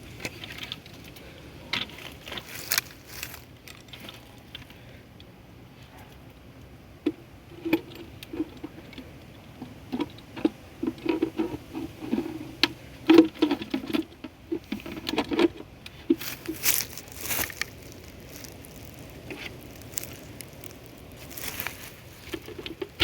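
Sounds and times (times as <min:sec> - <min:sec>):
packaging rustling: 0:16.2 - 0:23.0.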